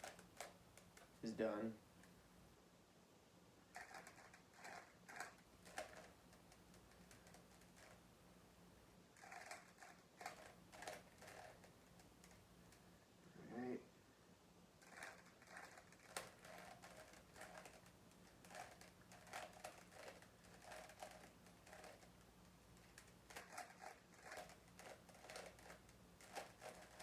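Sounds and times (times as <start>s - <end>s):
plastic puzzle cube clicking: 0.0s - 1.1s, 3.8s - 8.0s, 9.2s - 12.4s, 14.8s - 27.0s.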